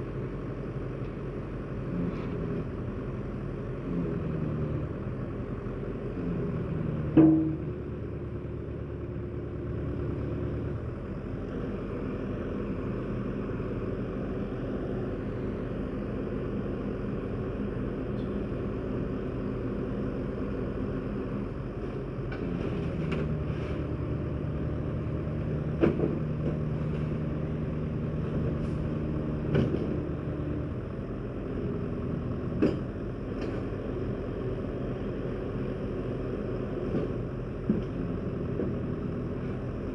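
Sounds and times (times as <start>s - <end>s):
heavy engine running: 0.0s - 39.9s.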